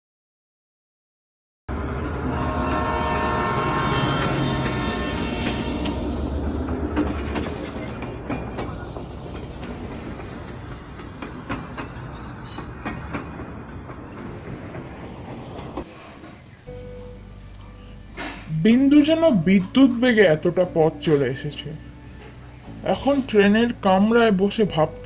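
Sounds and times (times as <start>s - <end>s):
train wheels clattering on rails: 2.7s - 16.4s.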